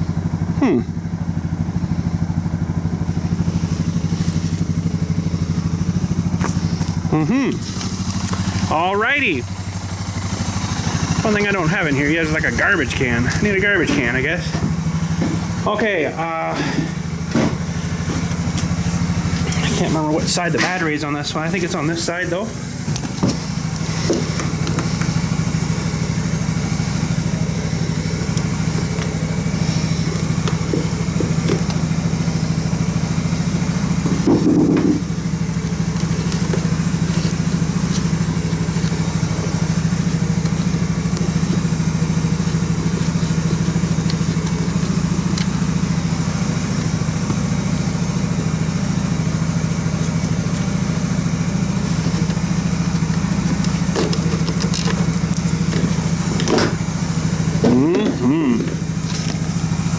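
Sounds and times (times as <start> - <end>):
motorcycle engines idling: 0.0 - 59.9
loud clunk: 34.1 - 35.1.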